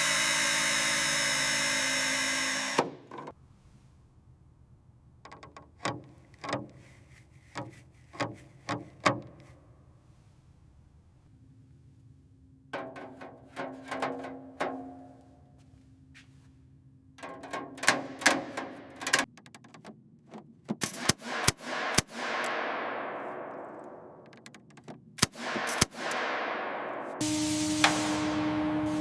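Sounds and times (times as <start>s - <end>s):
sharp knocks on metal: 17.2s - 20.0s
hiss: 27.2s - 29.0s.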